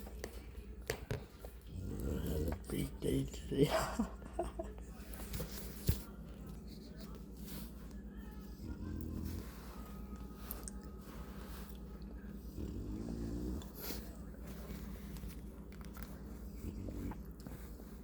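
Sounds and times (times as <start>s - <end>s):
puppy snoring: 1.7s - 2.8s, 12.4s - 14.1s, 16.4s - 17.5s.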